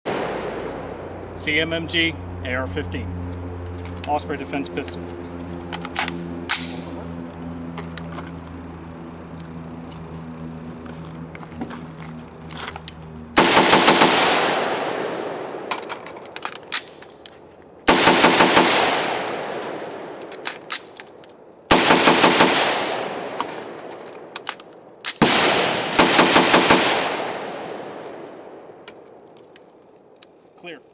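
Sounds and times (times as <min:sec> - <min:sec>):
rapid gunshots with echo: 0:13.4 - 0:15.7, 0:17.9 - 0:20.2, 0:21.7 - 0:23.8, 0:25.2 - 0:28.3
magazine change clicks: 0:15.5 - 0:30.4.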